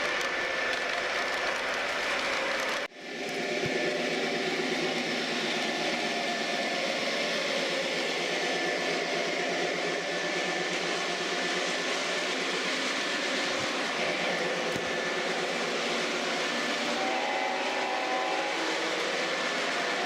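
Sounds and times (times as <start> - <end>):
model train motor and wheels: 0.0 - 20.0.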